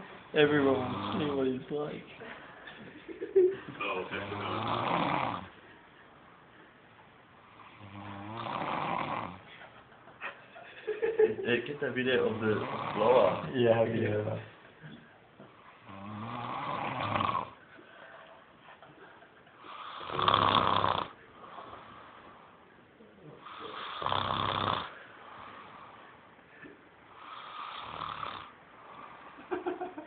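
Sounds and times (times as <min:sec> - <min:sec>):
man snoring: 0:00.6 - 0:01.5, 0:04.0 - 0:05.5, 0:07.6 - 0:09.4, 0:12.2 - 0:13.5, 0:15.8 - 0:17.6, 0:19.7 - 0:22.5, 0:23.4 - 0:26.0, 0:27.2 - 0:29.4
quiet breathing: 0:17.5 - 0:29.6.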